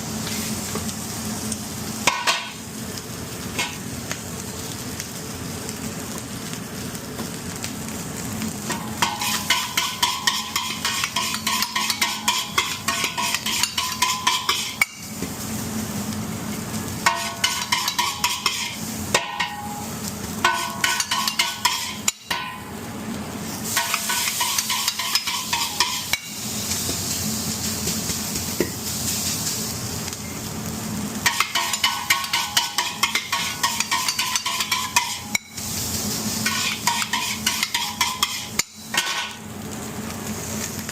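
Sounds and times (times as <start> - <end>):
food sizzling in a pan: 0.0 - 40.9
metal spatula scraping a pan: 9.0 - 15.0, 17.0 - 18.8, 20.4 - 22.1, 23.8 - 26.3, 31.2 - 35.5, 36.4 - 39.4.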